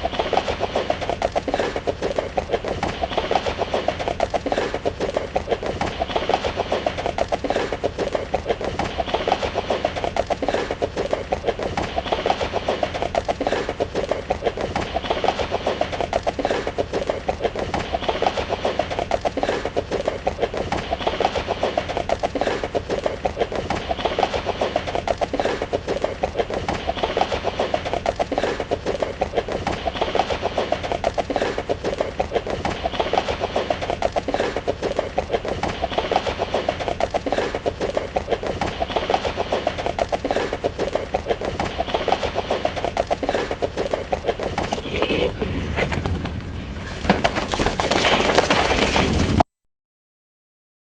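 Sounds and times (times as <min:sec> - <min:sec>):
horse hooves galloping: 0:00.0 - 0:49.4.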